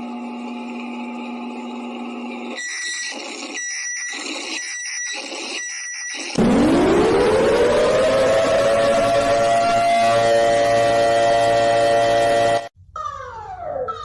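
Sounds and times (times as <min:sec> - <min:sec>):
siren winding up: 0:02.5 - 0:12.7
low electronic buzz: 0:06.4 - 0:12.7.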